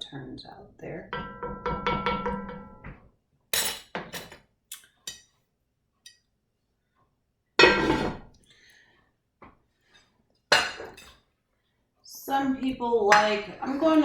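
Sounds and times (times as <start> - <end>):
spoon clinking against pot: 3.6 - 5.3.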